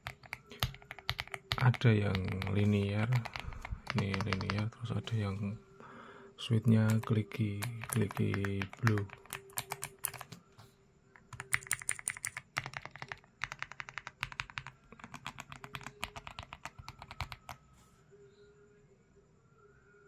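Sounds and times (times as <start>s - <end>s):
mechanical keyboard typing: 0.0s - 4.8s, 6.6s - 10.4s, 11.2s - 17.6s.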